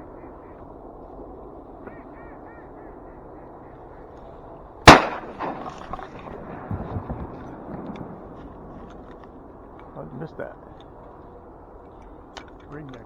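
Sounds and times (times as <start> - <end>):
shotgun shot: 4.9 - 6.1.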